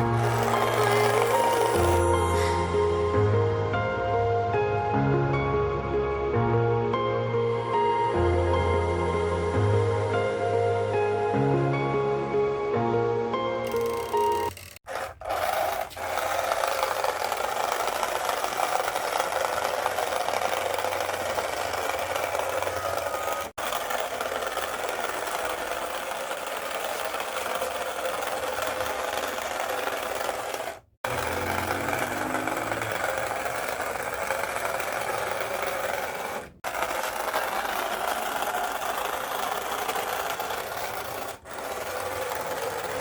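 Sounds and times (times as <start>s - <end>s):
small electric motor whirring: 0.0s - 2.7s, 13.6s - 43.0s.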